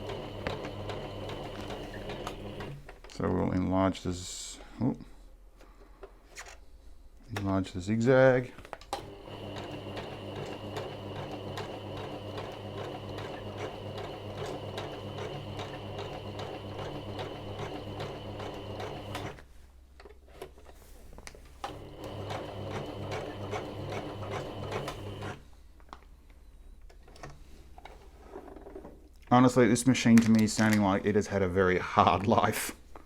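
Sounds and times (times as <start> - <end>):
sewing machine stitching: 0.0 - 2.8, 8.9 - 19.4, 21.6 - 25.4.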